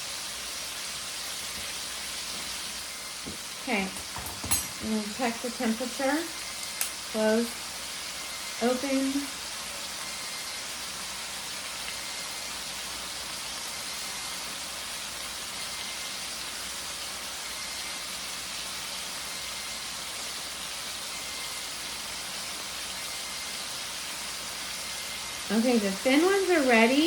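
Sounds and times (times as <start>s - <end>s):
steaks sizzling in a pan: 0.0s - 27.0s.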